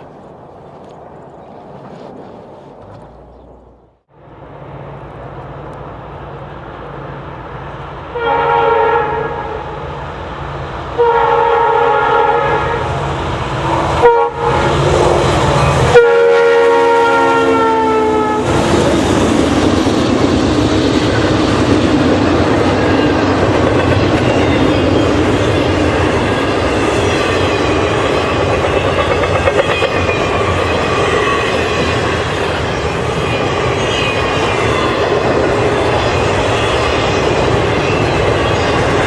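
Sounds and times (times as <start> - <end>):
train passing: 0.0 - 39.0
locomotive horn blasts: 8.1 - 9.8, 11.0 - 13.0, 14.0 - 14.8, 15.9 - 18.6
train wheel noise: 11.8 - 39.0.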